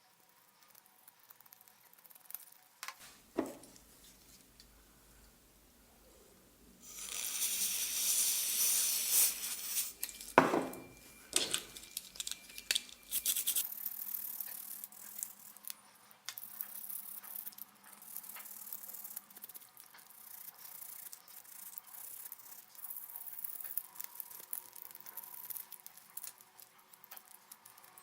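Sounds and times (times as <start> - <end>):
loud hiss: 6.8 - 11.0
small hard parts clicking and rattling: 6.8 - 28.0.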